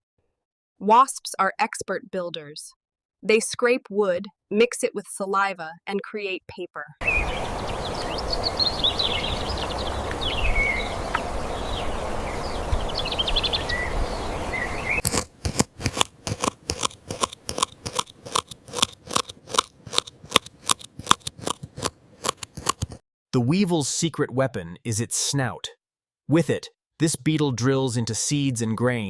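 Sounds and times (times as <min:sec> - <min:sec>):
bird chirps: 0:07.0 - 0:15.0
low wind rumble: 0:07.0 - 0:15.0
sharp dry clicks: 0:15.0 - 0:23.0.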